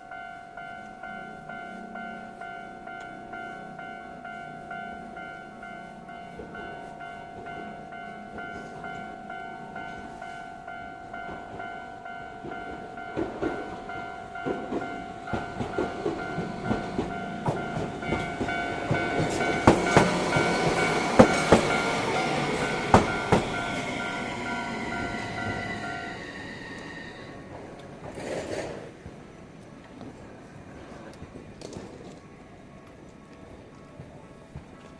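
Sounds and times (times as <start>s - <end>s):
level-crossing warning bell: 0.0s - 28.2s
tram wheels knocking over rail joints: 12.4s - 29.2s.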